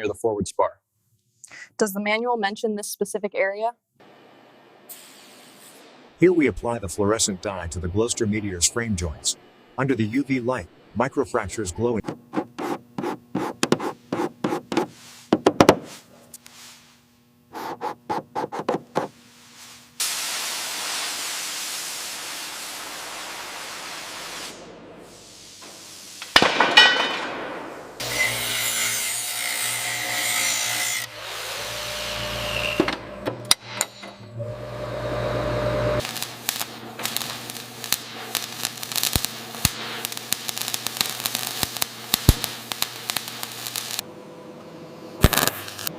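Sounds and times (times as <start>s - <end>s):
steady hiss: 14.8s - 26.5s, 36.0s - 44.0s
power tool running: 28.0s - 44.1s
dense crackling clicks: 36.0s - 44.0s.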